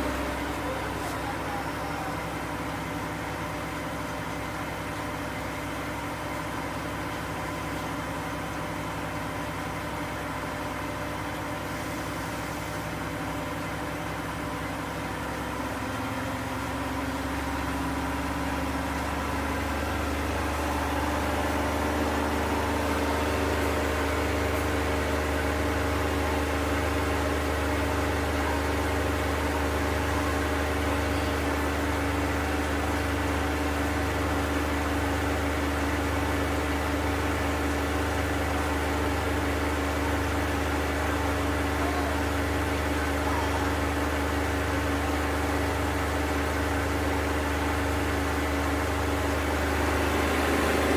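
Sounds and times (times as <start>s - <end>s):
washing machine spin whir: 0.0s - 50.9s.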